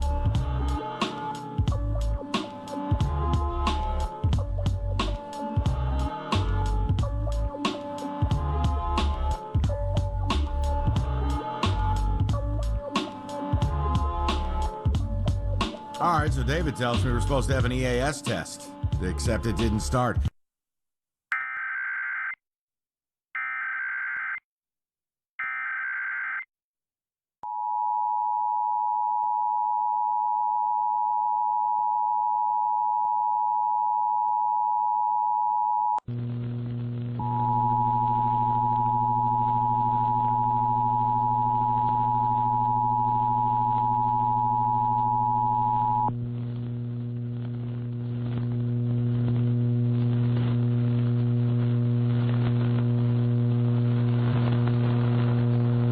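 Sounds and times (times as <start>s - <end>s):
loud hum with hiss: 46.2s - 55.9s.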